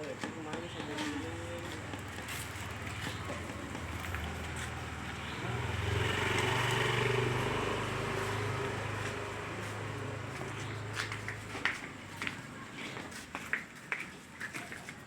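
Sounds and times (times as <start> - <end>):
vehicle engine running: 0.7 - 11.7.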